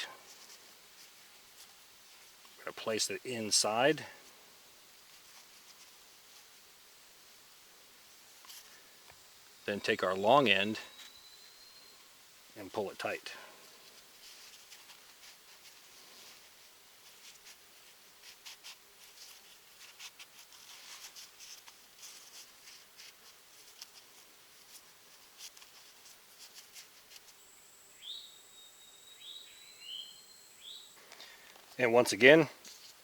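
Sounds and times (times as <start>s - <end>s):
bird whistling: 28.0s - 30.9s.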